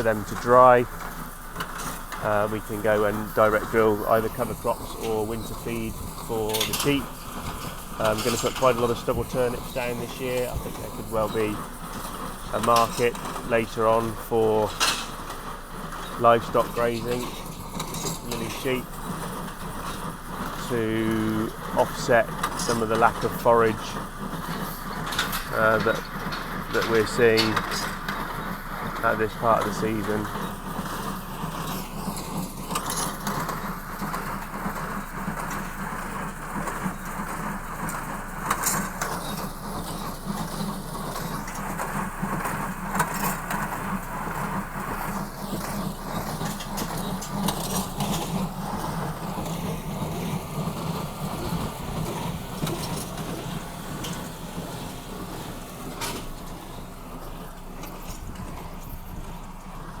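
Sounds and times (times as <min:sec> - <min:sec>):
combine harvester running: 0:00.0 - 1:00.0.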